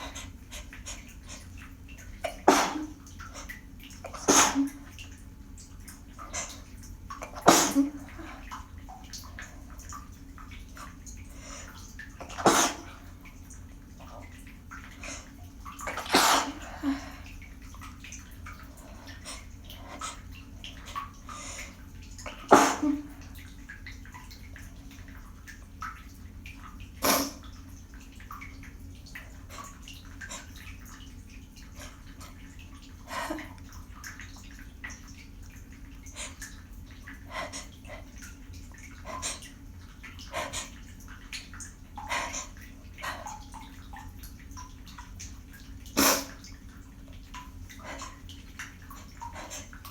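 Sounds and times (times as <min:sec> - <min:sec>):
person sneezing: 0:02.3 - 0:03.0, 0:04.2 - 0:04.8, 0:07.3 - 0:08.1, 0:12.3 - 0:12.9, 0:16.0 - 0:17.0, 0:22.4 - 0:23.1, 0:27.0 - 0:27.4, 0:46.0 - 0:46.3.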